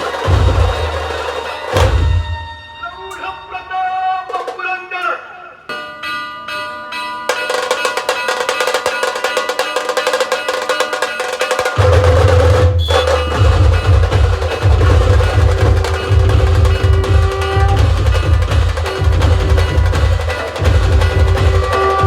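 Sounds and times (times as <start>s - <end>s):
rapid snare drum roll: 0.0s - 2.2s, 7.6s - 22.0s
heavy bass drum beats: 0.0s - 2.4s, 11.7s - 22.0s.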